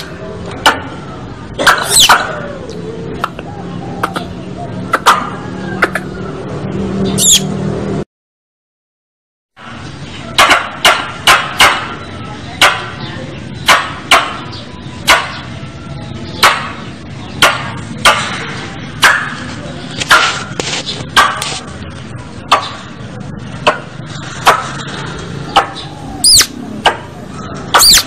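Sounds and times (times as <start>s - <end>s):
squirrel calls: 1.8s - 6.2s, 7.1s - 7.5s, 25.4s - 26.6s, 27.3s - 28.0s.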